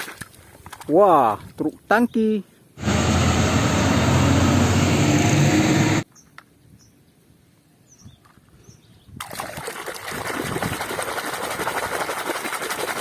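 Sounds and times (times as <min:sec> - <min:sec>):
water splashing over plastic toys: 0:00.0 - 0:00.9, 0:09.2 - 0:13.0.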